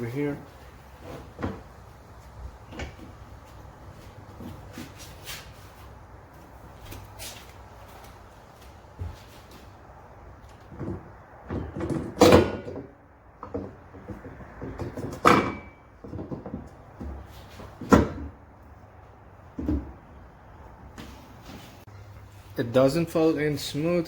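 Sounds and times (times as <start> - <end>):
metal brace clunking and knocking: 10.5 - 18.4.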